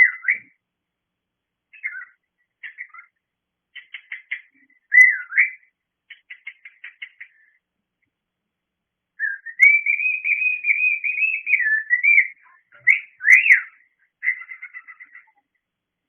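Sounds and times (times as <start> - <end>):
bird chirps: 0.0 - 0.6, 1.7 - 7.6, 9.2 - 15.7
cockatiel whistling: 1.8 - 3.1, 3.8 - 5.6, 9.2 - 15.3
rattly bird trill: 9.2 - 15.4.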